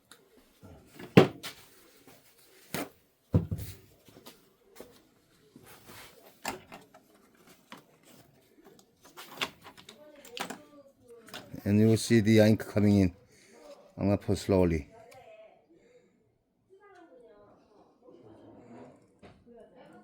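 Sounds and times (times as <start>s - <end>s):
hands handling plastic parts: 5.7s - 12.0s.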